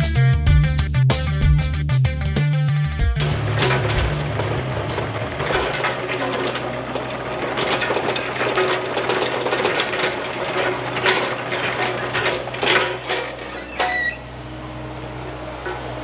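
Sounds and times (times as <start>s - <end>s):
clattering and knocking: 3.2s - 14.2s
excavator engine humming: 3.2s - 16.0s
brief squeal: 13.4s - 14.3s.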